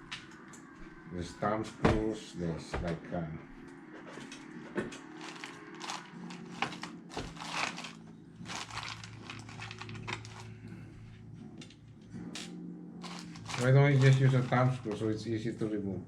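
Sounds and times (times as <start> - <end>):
small metal parts clicking and rattling: 5.2 - 10.5, 12.4 - 14.6.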